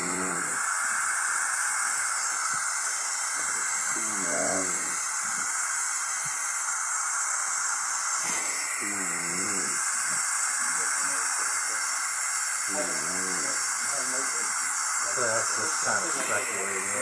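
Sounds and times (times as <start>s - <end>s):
murmured voice: 0.0s - 0.6s, 3.9s - 5.1s, 8.3s - 9.8s, 12.7s - 17.0s
steady hiss: 0.0s - 17.0s.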